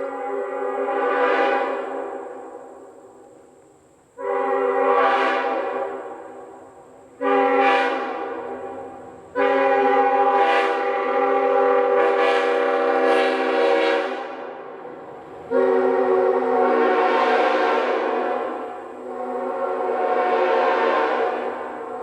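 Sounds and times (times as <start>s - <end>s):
locomotive air horn blasts: 0.0s - 2.2s, 4.2s - 6.0s, 7.2s - 8.6s, 9.3s - 14.4s, 15.5s - 22.0s.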